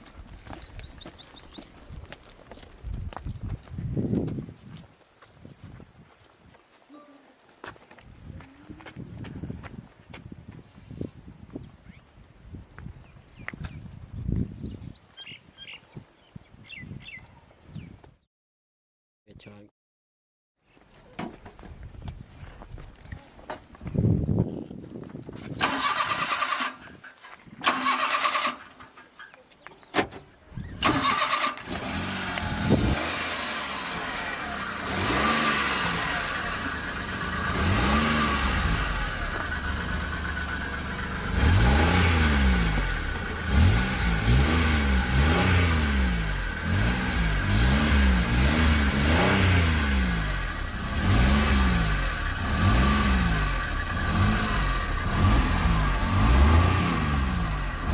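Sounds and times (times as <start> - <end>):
starter cranking: 25.6 - 26.8, 27.6 - 28.9, 30.8 - 31.9
car engine revving: 30.8 - 57.9.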